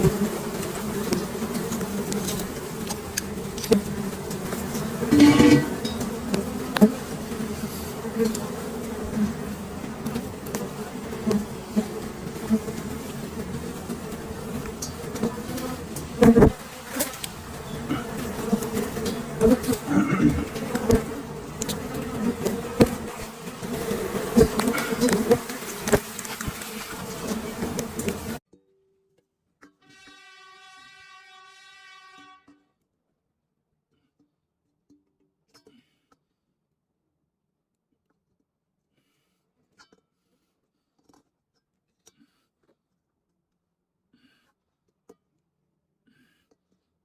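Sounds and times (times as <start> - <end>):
honeybees buzzing: 0.0 - 28.4.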